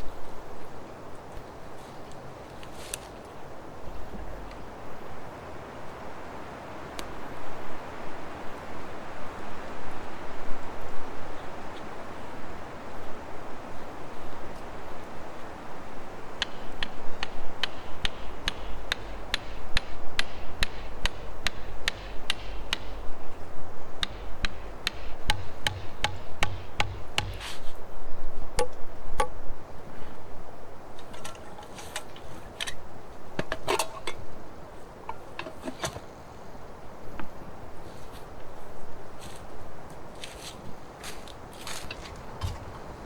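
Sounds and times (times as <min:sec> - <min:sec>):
hand tool hammering blows: 0:16.4 - 0:27.8, 0:31.0 - 0:32.6, 0:35.1 - 0:36.1.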